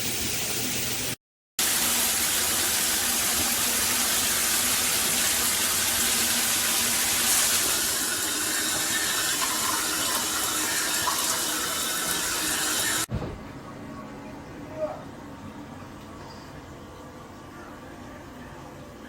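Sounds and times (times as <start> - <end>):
shower spraying water: 0.0 - 13.1.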